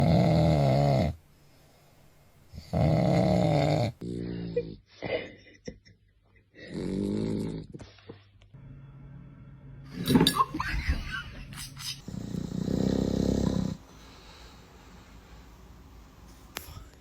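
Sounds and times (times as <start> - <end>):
dog snoring: 0.0 - 1.2, 2.5 - 4.8, 6.6 - 7.8, 12.0 - 13.8.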